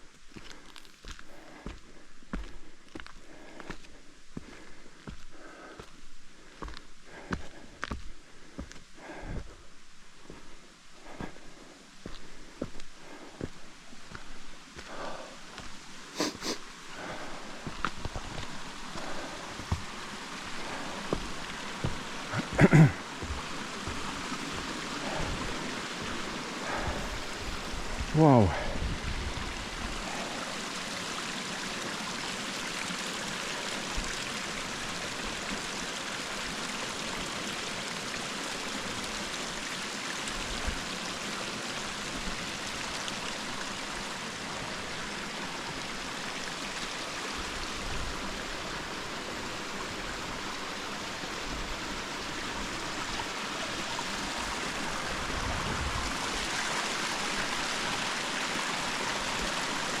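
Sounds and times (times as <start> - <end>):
stream flowing over rocks: 0.0 - 60.0.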